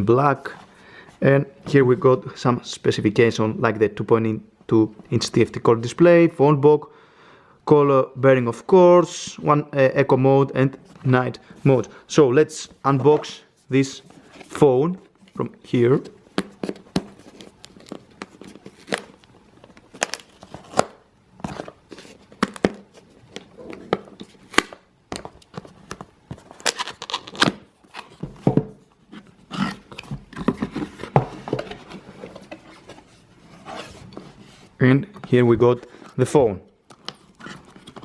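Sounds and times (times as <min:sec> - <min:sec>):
cardboard box rustling: 0:14.0 - 0:24.4, 0:29.3 - 0:34.8.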